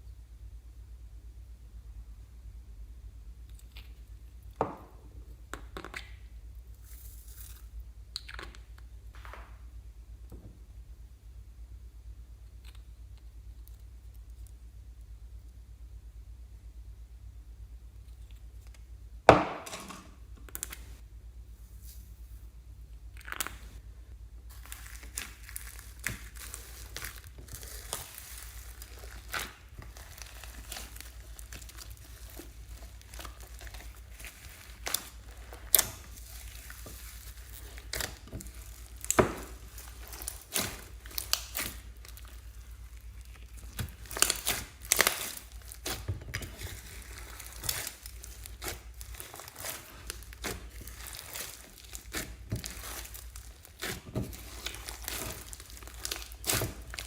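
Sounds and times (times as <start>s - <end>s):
faint low hum: 0.0s - 57.0s
slime crackling and popping: 24.5s - 57.0s.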